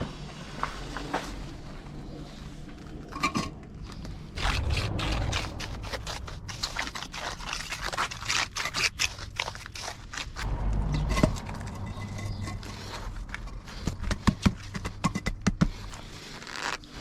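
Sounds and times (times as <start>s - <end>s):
low rumble: 3.6s - 17.0s.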